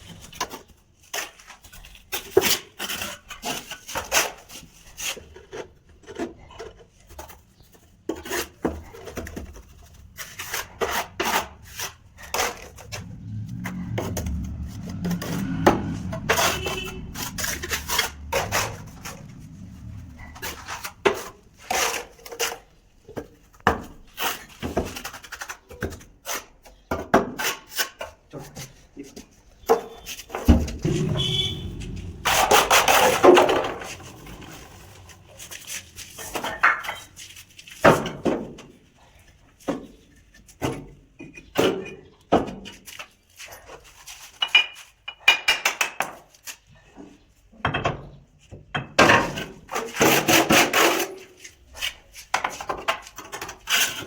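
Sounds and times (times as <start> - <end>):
wood scraping rub: 9.3 - 22.7, 30.5 - 37.3.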